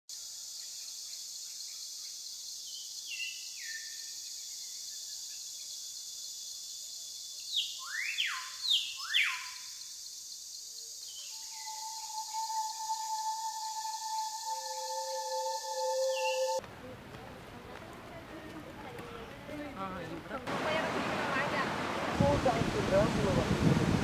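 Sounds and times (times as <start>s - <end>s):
high insect hiss: 0.1s - 16.6s
bird calls sweeping in pitch: 11.1s - 16.6s.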